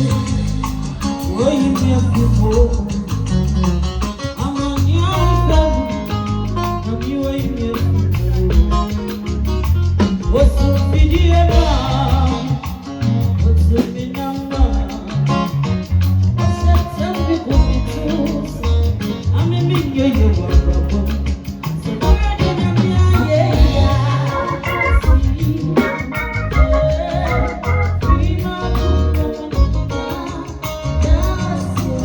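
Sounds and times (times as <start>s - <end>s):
person singing: 0.0s - 3.6s, 9.9s - 15.6s, 16.5s - 32.0s
heavy bass with steady beat: 0.0s - 32.0s.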